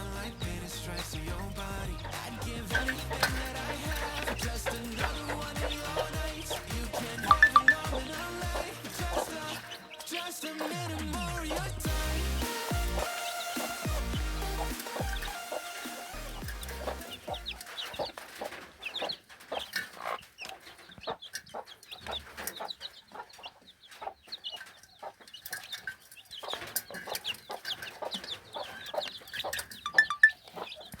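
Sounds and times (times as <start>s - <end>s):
background music: 0.0s - 18.0s
chickens clucking: 0.0s - 31.0s.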